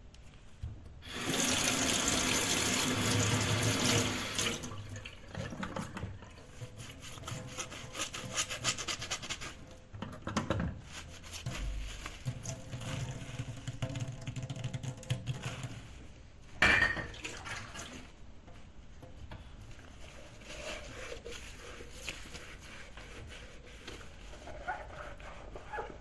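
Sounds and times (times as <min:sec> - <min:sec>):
tap water running into sink: 0:01.1 - 0:06.2
dishes and cutlery clinking: 0:16.6 - 0:17.3.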